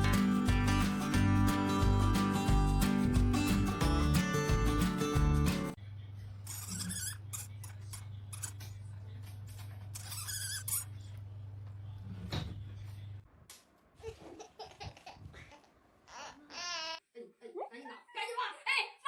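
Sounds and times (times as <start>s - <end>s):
short high squeaks: 6.5s - 7.7s, 9.9s - 10.9s.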